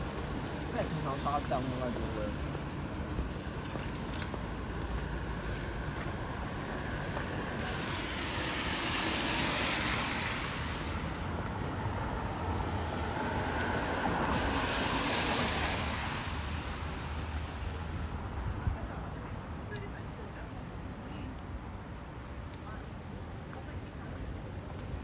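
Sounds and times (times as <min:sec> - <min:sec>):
tyres hissing on wet road: 0:00.0 - 0:19.0.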